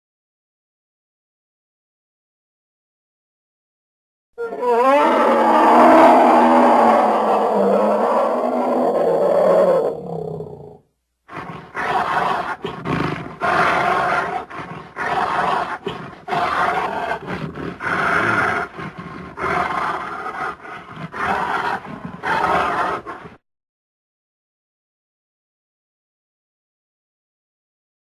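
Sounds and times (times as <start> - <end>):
wild animal roaring: 4.4 - 23.4.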